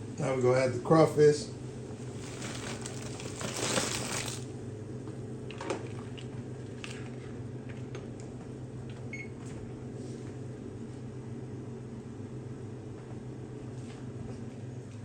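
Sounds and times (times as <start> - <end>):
steady low hum: 0.0 - 15.0
splashing and rattling: 2.1 - 4.5.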